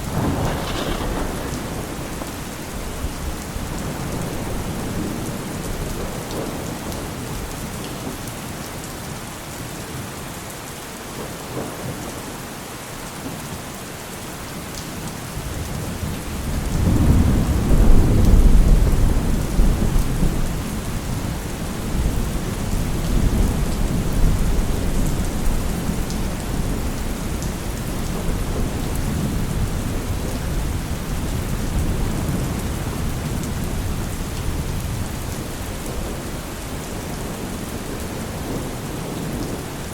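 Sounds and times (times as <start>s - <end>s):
rolling thunder: 0.0s - 7.5s, 15.5s - 39.9s
heavy rain falling: 0.0s - 39.9s.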